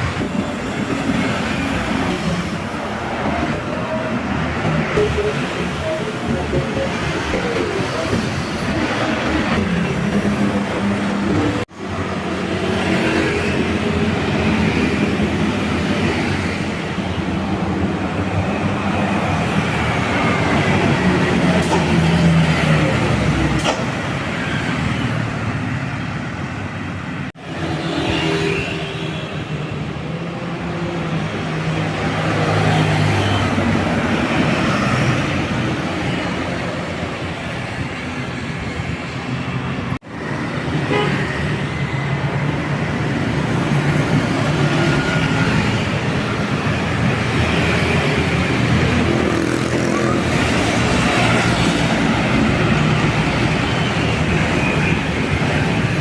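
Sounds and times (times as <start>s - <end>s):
buses driving past: 0.0s - 56.0s
multi-tone bus horns: 40.8s - 41.7s.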